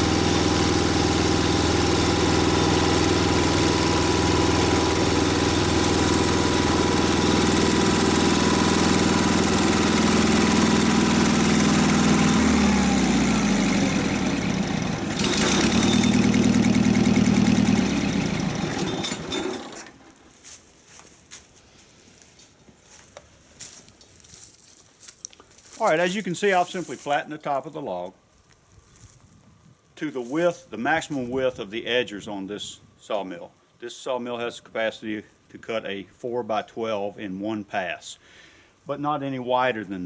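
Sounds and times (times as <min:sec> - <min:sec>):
sawmill engine running: 0:00.0 - 0:20.2.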